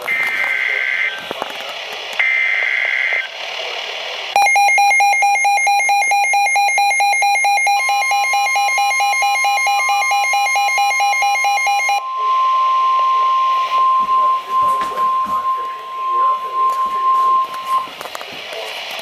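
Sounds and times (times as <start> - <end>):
steady weather radio alarm tone: 0.0 - 19.0
shrill electronic alarm beeping: 4.4 - 18.0.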